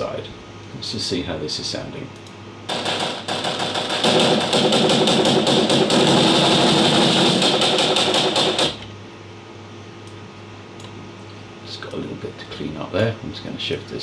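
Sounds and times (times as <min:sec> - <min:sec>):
rapid knocks and clatters: 0:02.7 - 0:08.8.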